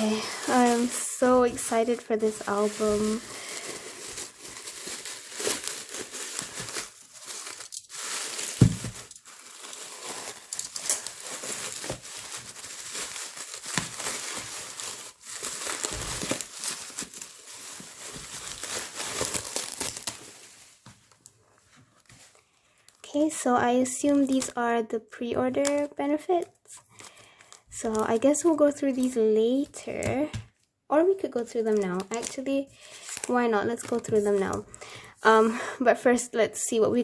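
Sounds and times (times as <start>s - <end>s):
packaging crinkling and rustling: 0.0s - 24.6s, 31.2s - 35.2s
thump: 8.6s - 9.0s.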